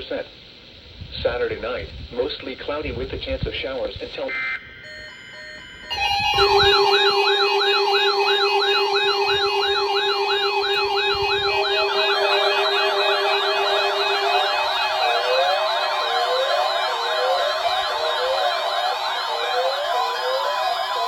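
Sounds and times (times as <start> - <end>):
warbling siren alarm: 4.3 - 21.0.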